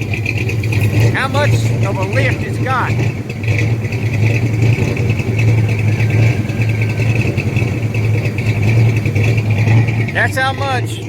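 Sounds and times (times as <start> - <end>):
truck engine idling roughly: 0.0 - 11.0.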